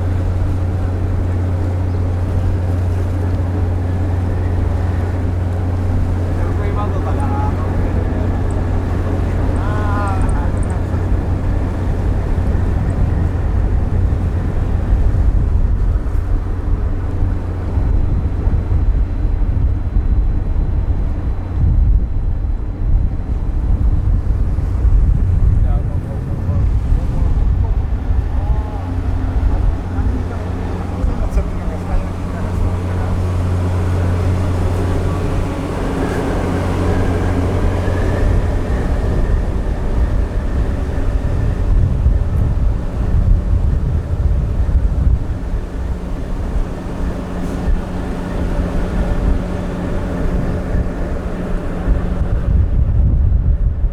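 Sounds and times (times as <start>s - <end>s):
low rumble: 0.0s - 53.9s
ship engines droning: 0.0s - 53.9s
wind noise on microphone: 0.0s - 53.9s.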